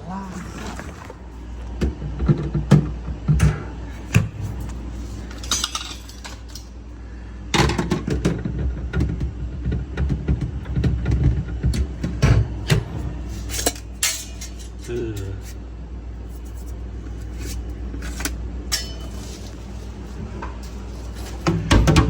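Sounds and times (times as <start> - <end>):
hard parts clinking and knocking: 3.4 - 6.8, 11.8 - 15.6, 16.3 - 22.0
parts rattling and clattering: 3.4 - 6.8, 10.7 - 15.6, 16.2 - 22.0.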